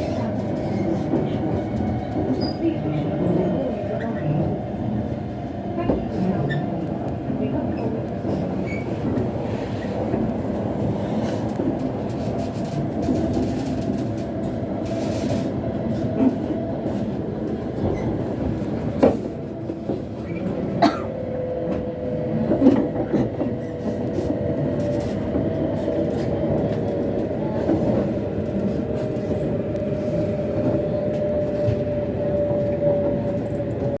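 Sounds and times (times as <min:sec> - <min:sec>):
train running rumble: 0:00.0 - 0:34.0
person clearing throat: 0:20.8 - 0:21.2.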